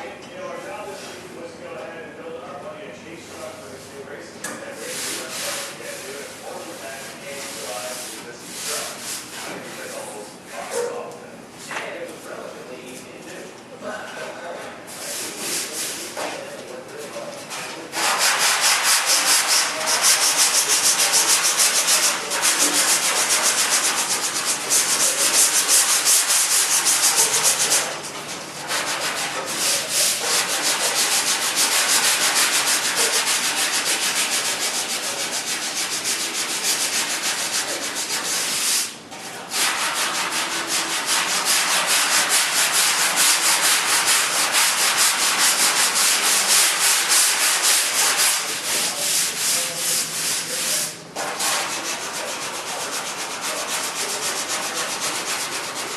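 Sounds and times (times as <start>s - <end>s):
sandpaper rubbing a surface: 4.7s - 10.1s, 14.9s - 16.2s, 18.0s - 55.9s.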